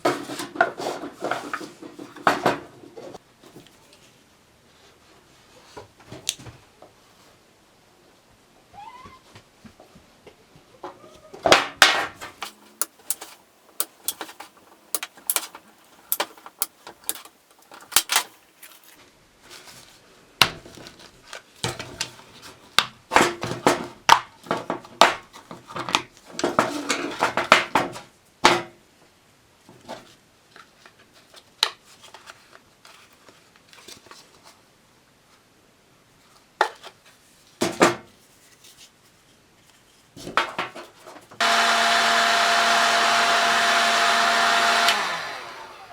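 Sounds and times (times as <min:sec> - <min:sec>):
hard objects clattering: 0:12.1 - 0:18.8.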